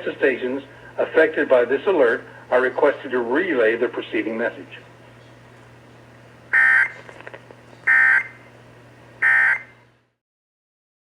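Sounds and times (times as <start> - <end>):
low steady hum: 0.0 - 10.2
digital data bursts: 6.6 - 6.9, 7.9 - 8.4, 9.2 - 9.7.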